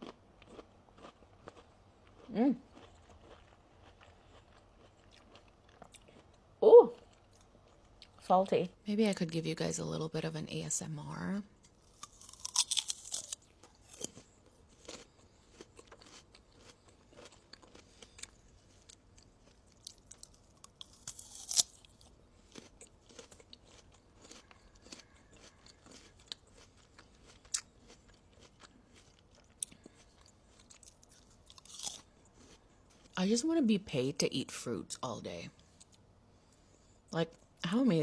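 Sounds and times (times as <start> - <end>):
person chewing crisp fruit: 0.0 - 8.2, 11.6 - 33.2.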